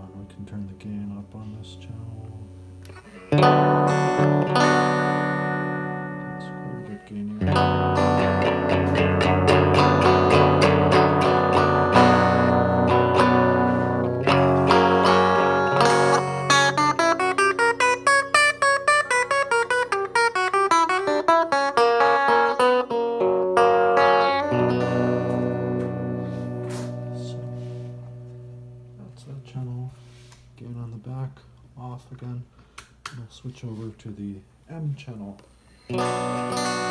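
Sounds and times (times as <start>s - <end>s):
distorted electric guitar: 2.9s - 6.8s, 7.4s - 29.0s, 35.9s - 36.9s.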